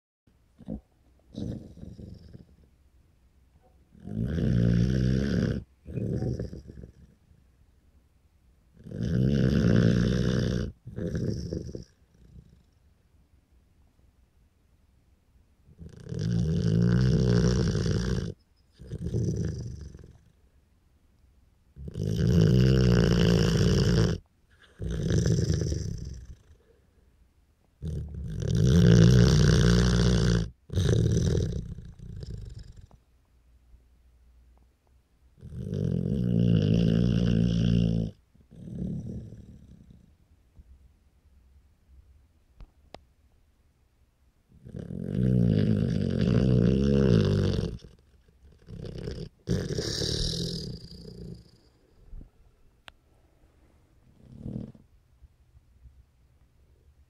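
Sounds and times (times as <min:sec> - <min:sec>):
dog snoring: 0:00.6 - 0:02.7, 0:03.9 - 0:07.2, 0:08.8 - 0:12.8, 0:15.7 - 0:20.4, 0:21.8 - 0:26.8, 0:27.8 - 0:33.0, 0:35.4 - 0:40.1, 0:44.5 - 0:51.8, 0:54.0 - 0:54.9.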